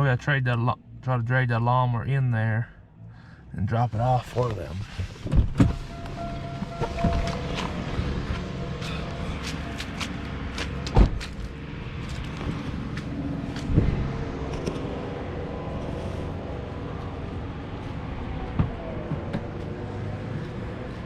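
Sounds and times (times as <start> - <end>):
car engine idling: 5.7 - 13.8.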